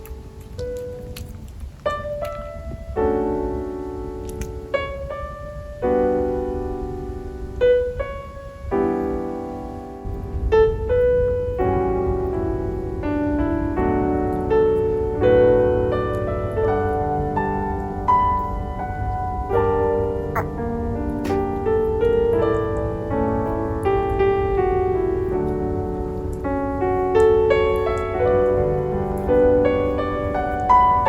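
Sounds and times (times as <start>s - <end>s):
slow piano chords: 0.0s - 31.0s.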